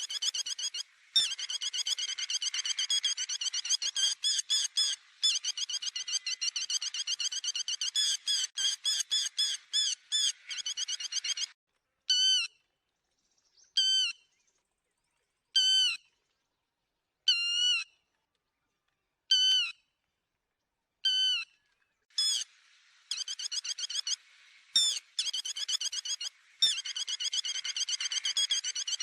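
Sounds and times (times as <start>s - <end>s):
lapwing calling: 0.0s - 12.5s, 22.2s - 22.5s, 23.1s - 29.0s.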